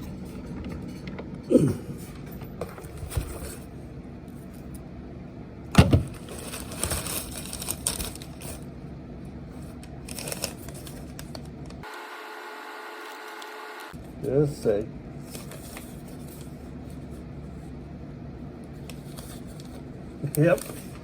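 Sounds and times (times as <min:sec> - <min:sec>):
steady low hum: 0:00.0 - 0:21.0
packaging rustling and crinkling: 0:06.1 - 0:08.7, 0:09.6 - 0:11.8, 0:18.8 - 0:21.0.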